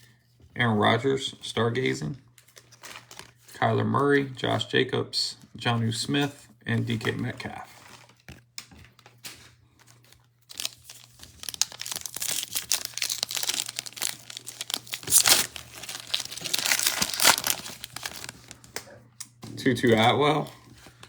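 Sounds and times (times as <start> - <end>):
foil wrapper tearing and crinkling: 10.0 - 18.7.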